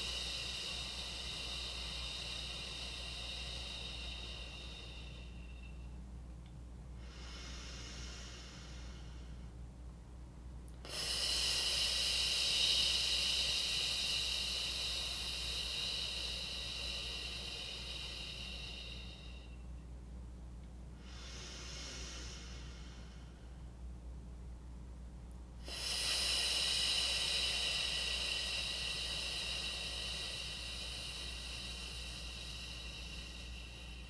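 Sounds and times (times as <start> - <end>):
person exhaling hissing f sound: 0.0 - 5.8, 7.0 - 9.5, 10.8 - 19.6, 21.0 - 23.5, 25.6 - 34.0
person breathing in: 0.0 - 5.9, 7.0 - 9.6, 10.8 - 19.7, 21.0 - 23.7, 25.6 - 34.0.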